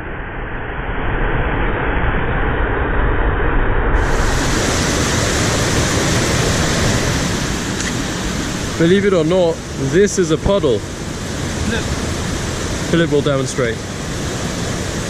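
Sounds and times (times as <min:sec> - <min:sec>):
waterfall rushing: 0:04.0 - 0:15.0.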